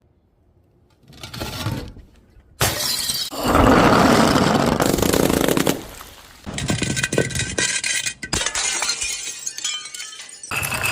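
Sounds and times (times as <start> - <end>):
glass smashing: 2.6 - 3.4, 6.5 - 10.9
glass pieces clinking: 6.5 - 10.9.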